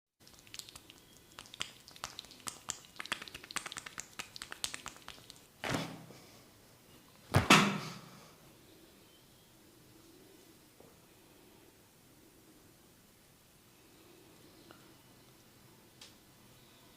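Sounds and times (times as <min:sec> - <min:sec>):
loud thumps: 0:07.3 - 0:08.0.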